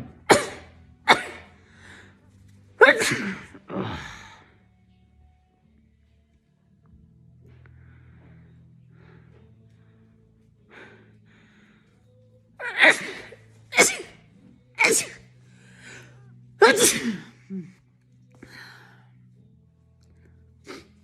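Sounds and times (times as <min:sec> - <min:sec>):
woman sneezing: 0:00.0 - 0:01.5, 0:02.8 - 0:03.8, 0:12.6 - 0:14.2, 0:14.8 - 0:15.2, 0:16.6 - 0:17.8
faint breaths drawn in: 0:01.5 - 0:02.8, 0:07.4 - 0:12.6, 0:13.2 - 0:16.6, 0:17.3 - 0:19.5.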